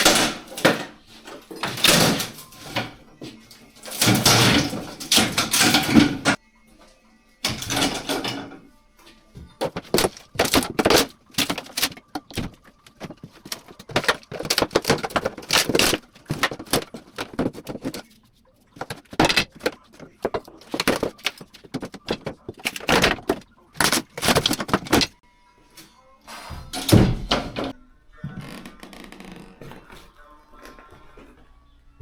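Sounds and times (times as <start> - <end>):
wooden floorboards knocking and clattering: 0.0 - 6.4, 9.4 - 18.1, 18.8 - 25.2, 26.5 - 27.7.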